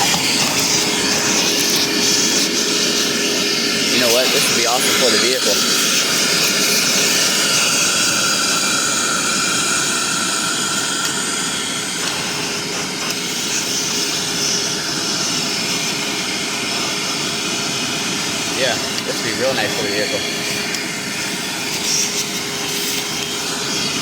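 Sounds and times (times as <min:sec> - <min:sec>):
vacuum cleaner motor whine: 0:00.0 - 0:24.0
rushing air hiss: 0:18.5 - 0:24.0.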